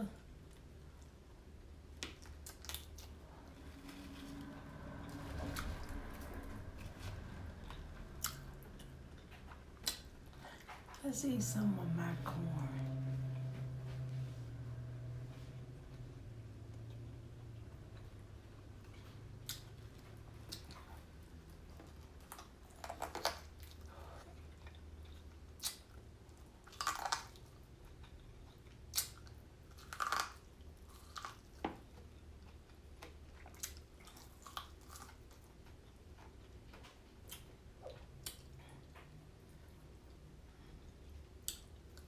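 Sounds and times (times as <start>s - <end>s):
low steady hum: 0.0s - 42.0s
biting and chewing corn: 18.8s - 38.5s.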